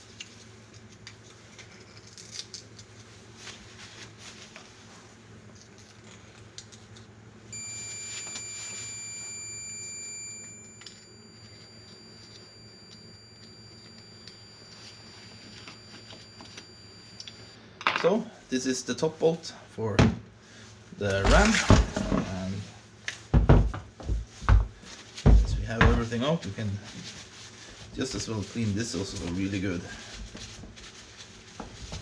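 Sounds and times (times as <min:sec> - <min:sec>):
high-pitched tone: 0:07.6 - 0:17.6.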